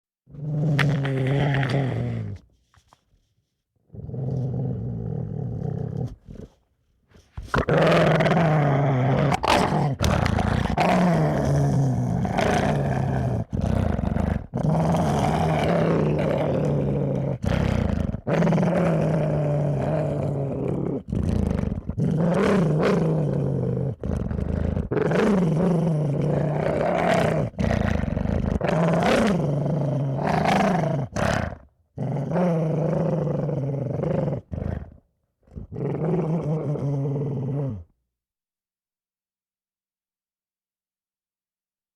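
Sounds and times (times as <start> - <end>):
dogs growling: 7.5 - 37.9.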